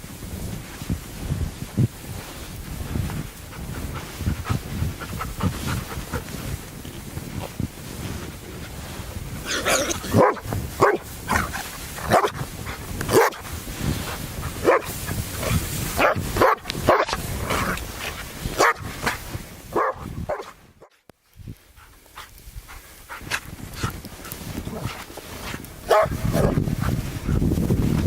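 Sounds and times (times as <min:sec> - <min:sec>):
dog barking: 0:10.1 - 0:12.4, 0:13.1 - 0:13.4, 0:14.6 - 0:17.8, 0:18.6 - 0:21.0, 0:25.9 - 0:26.6.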